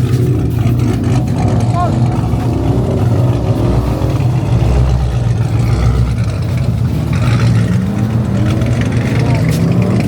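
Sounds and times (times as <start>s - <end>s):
car engine running: 0.0s - 10.0s.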